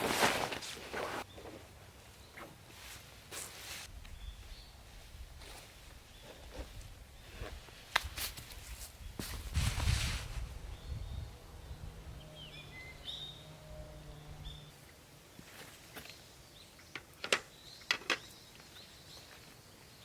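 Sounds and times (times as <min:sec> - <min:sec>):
birds chirping: 0:10.6 - 0:20.0.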